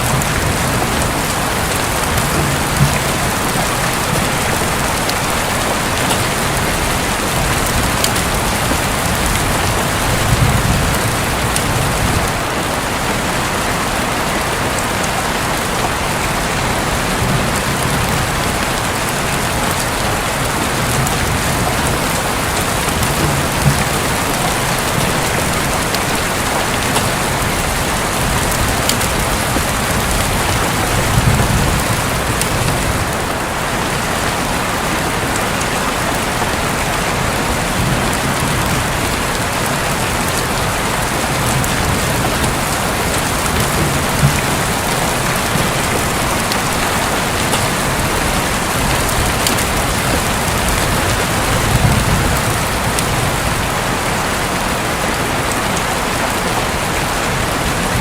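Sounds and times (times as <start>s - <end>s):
low rumble of thunder: 0.0s - 12.5s, 16.9s - 33.3s, 37.4s - 54.5s
heavy rain on a roof: 0.0s - 58.0s.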